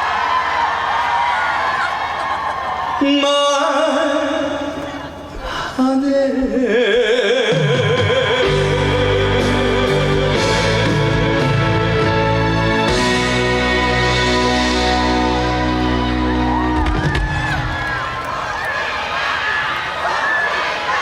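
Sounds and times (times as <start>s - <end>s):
trot music over sound system: 7.6s - 17.1s.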